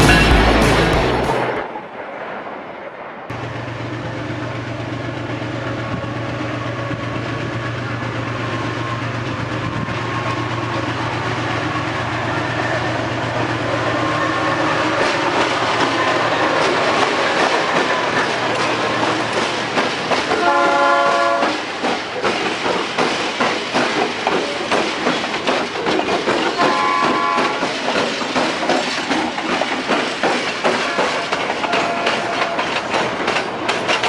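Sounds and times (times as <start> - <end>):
locomotive engine drone: 0.0 - 2.0, 3.3 - 27.0
wheels clicking over rail joints: 7.0 - 34.0.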